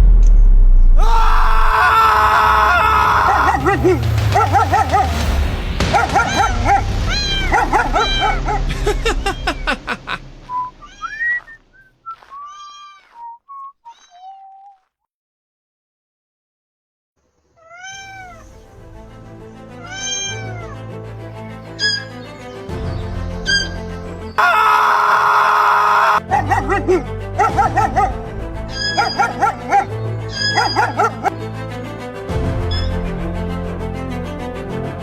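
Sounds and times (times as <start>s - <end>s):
background music: 1.0s - 11.4s, 18.4s - 35.0s
kitten meowing: 7.1s - 8.4s, 12.4s - 13.2s, 13.9s - 14.8s, 17.6s - 18.4s, 19.8s - 20.8s, 30.3s - 31.0s.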